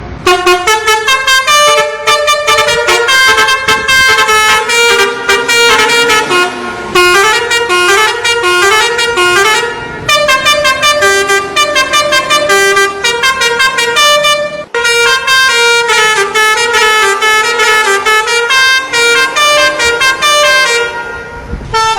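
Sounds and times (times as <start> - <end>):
blaring horn tune: 0.2 - 21.9.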